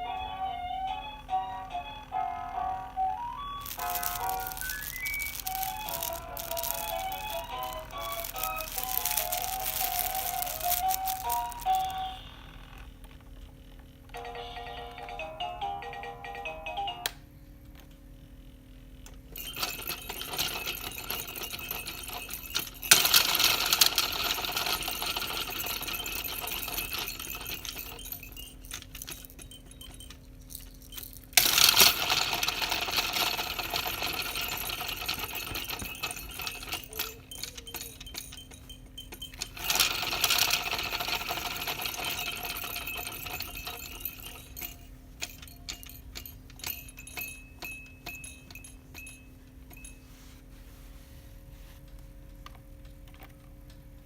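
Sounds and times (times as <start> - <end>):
baby toys rattling and jingling: 3.5 - 12.2, 19.2 - 50.1.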